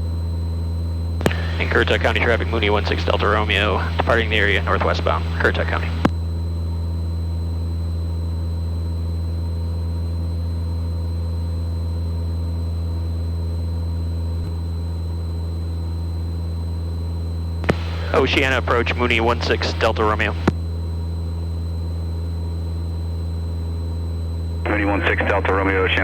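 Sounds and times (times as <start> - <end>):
aircraft engine and propeller droning: 1.0 - 7.0, 15.0 - 26.0.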